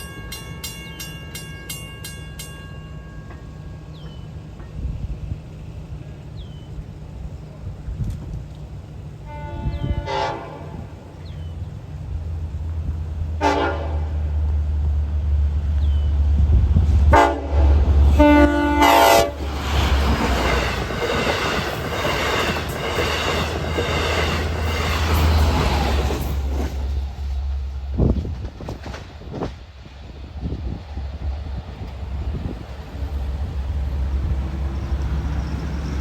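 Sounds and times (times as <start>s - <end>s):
locomotive engine drone: 0.0s - 36.0s
train chime horn: 9.3s - 11.0s, 13.4s - 14.2s, 17.2s - 19.4s
wheels clattering over rail joints: 19.3s - 30.1s.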